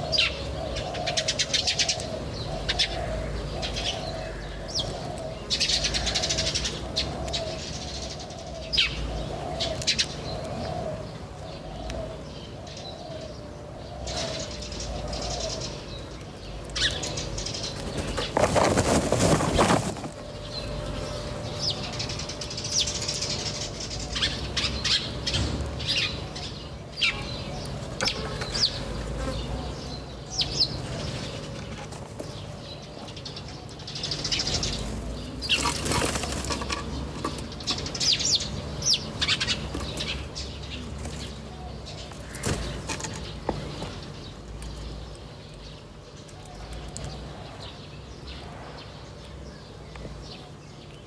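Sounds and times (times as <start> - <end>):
birds chirping: 0.0 - 51.0
wings flapping: 17.6 - 20.5, 35.4 - 37.1.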